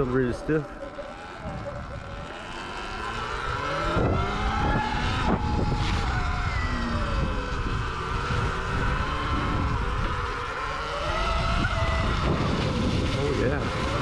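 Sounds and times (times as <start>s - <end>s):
heavy low rumble: 0.0s - 10.6s
electric dirt bike motor whine: 0.0s - 14.0s.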